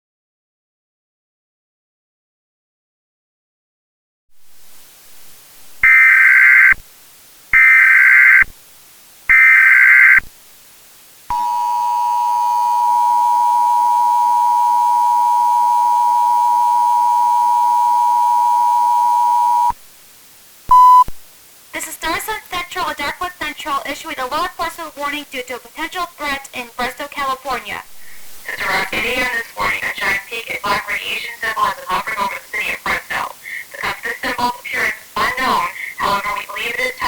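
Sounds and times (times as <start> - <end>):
data tone bursts: 5.8 - 6.8, 7.6 - 8.5, 9.3 - 10.3, 11.3 - 19.8, 20.7 - 21.1
two-tone alert signal: 11.3 - 19.8.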